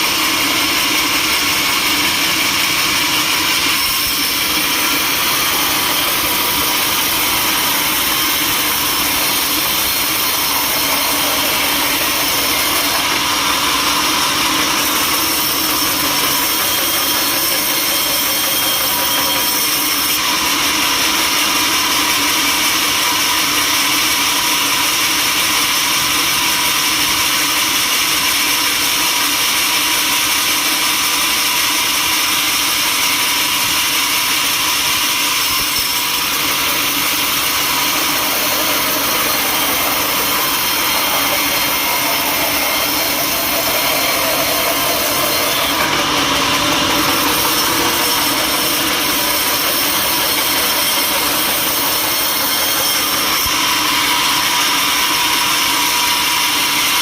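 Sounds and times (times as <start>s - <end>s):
sawmill machinery running: 0.0s - 57.0s.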